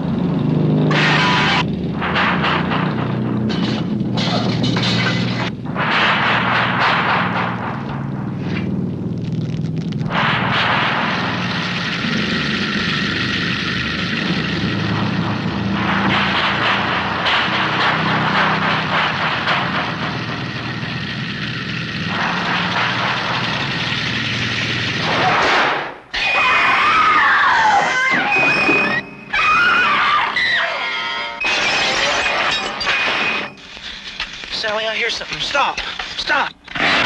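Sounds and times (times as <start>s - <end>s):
high wavering screams: 0.9s - 1.6s, 26.1s - 31.4s.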